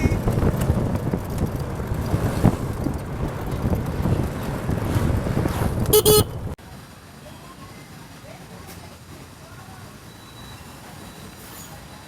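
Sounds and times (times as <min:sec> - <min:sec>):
wind buffeting microphone: 0:00.0 - 0:06.6
road traffic rumbling: 0:00.0 - 0:12.0
loud vehicle horn: 0:05.9 - 0:06.6.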